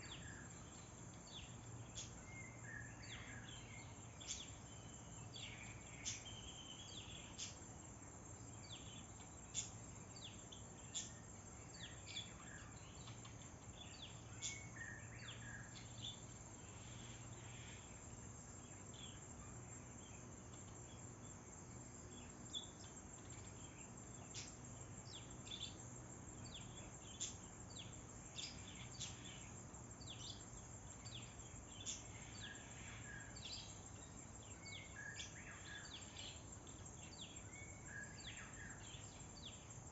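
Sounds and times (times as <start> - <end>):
faint background hum: 0.0 - 39.9
birds chirping: 8.5 - 21.0, 21.6 - 39.7.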